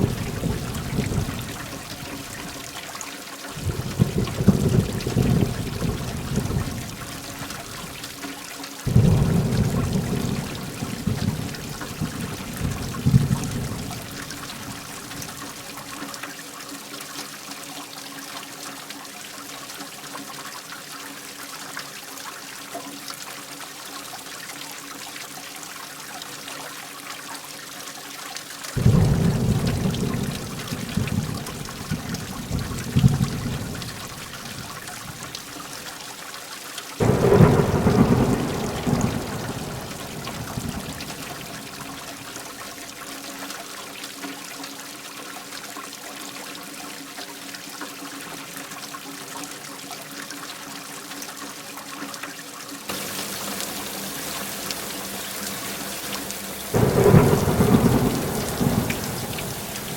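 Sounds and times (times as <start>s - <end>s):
thunder rumbling: 0.0s - 2.5s, 3.6s - 7.8s, 8.9s - 15.2s, 28.8s - 35.3s, 37.0s - 42.6s, 52.9s - 59.9s
heavy rain: 0.0s - 16.2s, 28.7s - 36.0s, 37.0s - 44.1s, 52.9s - 59.9s.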